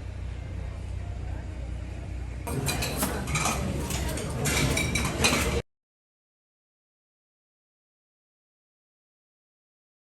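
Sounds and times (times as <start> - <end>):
busy background noise: 0.0 - 5.6.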